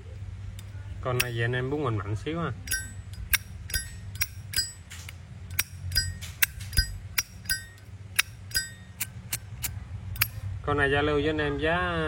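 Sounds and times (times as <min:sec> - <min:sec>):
lighter lid clicking and ringing: 0:02.7 - 0:04.8, 0:05.5 - 0:10.4.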